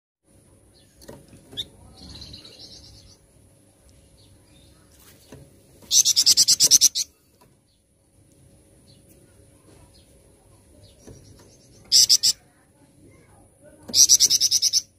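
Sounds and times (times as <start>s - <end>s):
songbird trilling: 1.5s - 3.2s, 5.9s - 7.2s, 10.8s - 12.4s, 13.9s - 14.9s
bird rapid rattling call: 5.9s - 7.1s.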